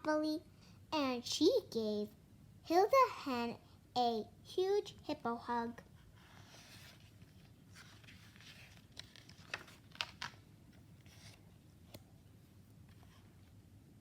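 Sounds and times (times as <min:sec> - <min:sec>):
paper pages rustling: 0:06.1 - 0:12.1.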